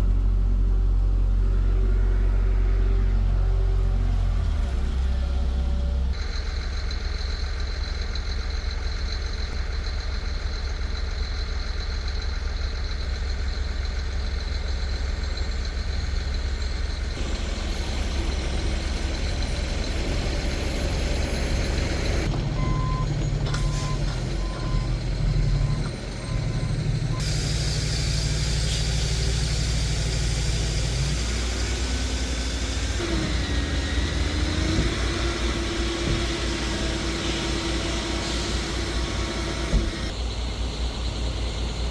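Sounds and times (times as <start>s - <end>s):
diesel engine drone: 0.0s - 41.9s
reversing alarm beeping: 22.2s - 27.5s.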